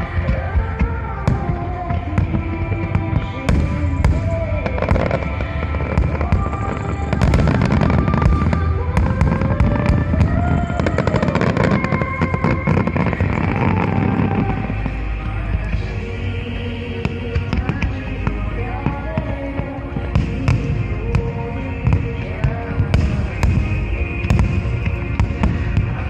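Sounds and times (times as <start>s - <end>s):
fireworks bursting and crackling: 0.0s - 26.0s
loud music with melodic tones: 0.0s - 26.0s.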